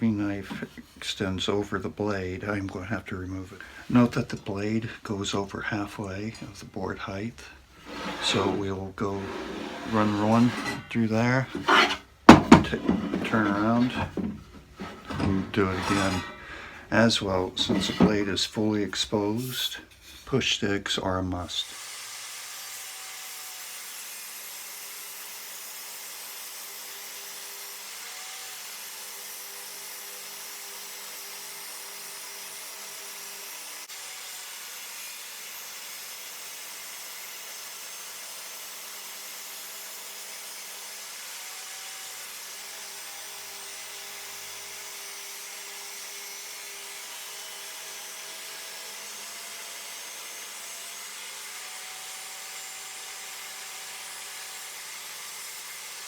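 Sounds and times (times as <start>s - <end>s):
table saw cutting wood: 0.4s - 1.0s, 7.8s - 18.4s, 21.6s - 56.0s.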